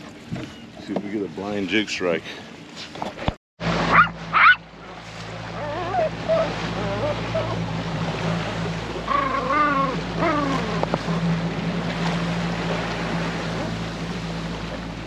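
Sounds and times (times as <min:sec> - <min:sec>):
boat motor humming: 0:00.0 - 0:15.0
wavering whine-like calls: 0:03.9 - 0:04.6, 0:05.4 - 0:11.4.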